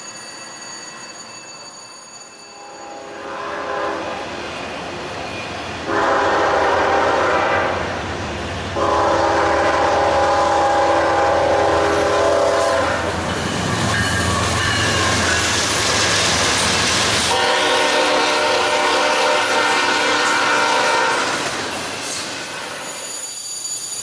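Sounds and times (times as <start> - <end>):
rushing train noise: 0.0 - 24.0
locomotive air horn blasts: 2.5 - 4.1, 5.9 - 7.7, 8.8 - 13.1, 17.3 - 21.4.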